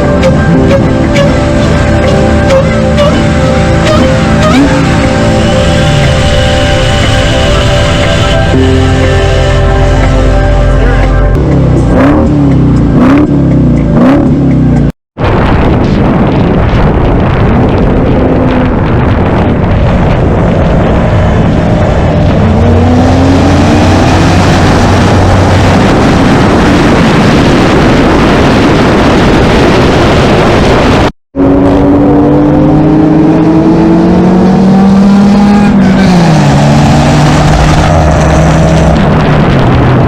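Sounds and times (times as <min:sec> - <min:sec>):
heavy rushing noise: 0:00.0 - 0:40.0
loud car engine: 0:00.0 - 0:40.0.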